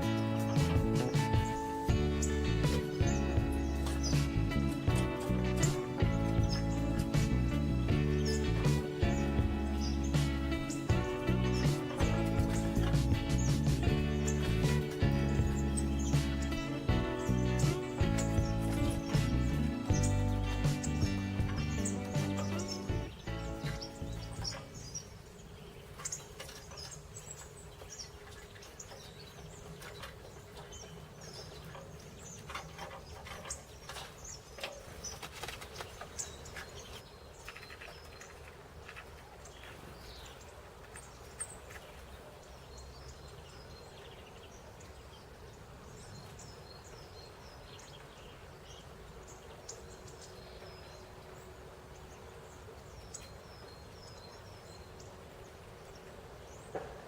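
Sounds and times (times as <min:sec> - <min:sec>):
small songbirds chirping: 0:00.0 - 0:57.0
wing flutters: 0:08.2 - 0:42.1.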